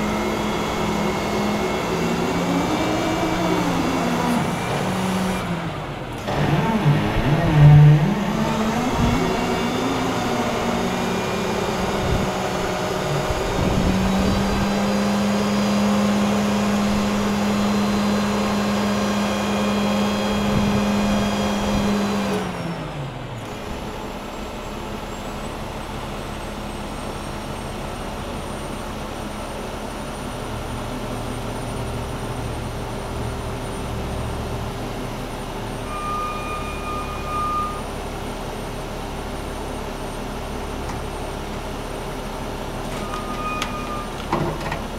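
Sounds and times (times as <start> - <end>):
truck engine running: 0.0 - 35.8
electronic beep: 35.9 - 38.0, 43.0 - 44.2.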